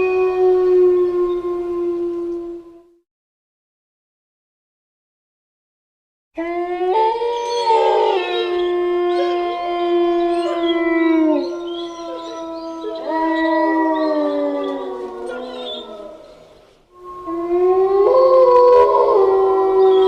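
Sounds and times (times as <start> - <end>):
wolves howling in chorus: 6.4 - 20.0.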